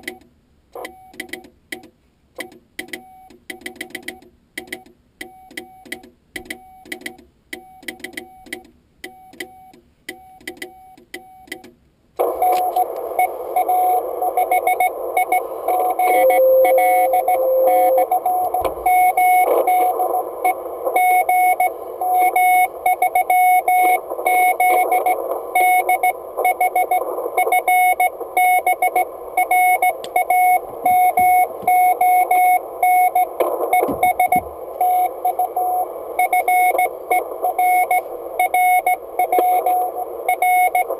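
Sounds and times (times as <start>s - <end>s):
steady low tone: 12.2s - 19.2s
morse code beeps: 12.2s - 40.9s
radio receiver hiss: 12.2s - 40.9s.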